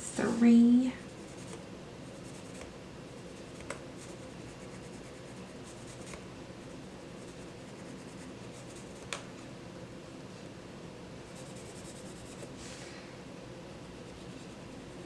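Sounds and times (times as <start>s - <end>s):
pencil scratching on paper: 1.0s - 6.2s, 7.2s - 9.1s, 11.3s - 12.5s.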